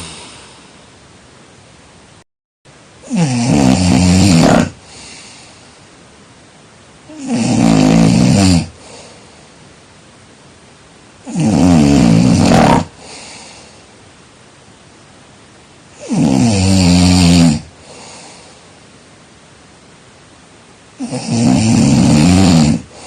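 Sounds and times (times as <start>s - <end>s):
person snoring loudly: 0.0s - 0.6s, 3.0s - 5.3s, 7.1s - 9.2s, 11.2s - 13.5s, 16.0s - 18.4s, 21.0s - 23.0s.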